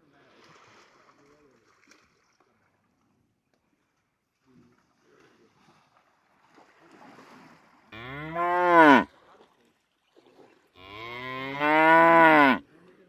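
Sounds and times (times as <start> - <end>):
water buffalo mooing: 7.9 - 9.1, 10.8 - 12.6.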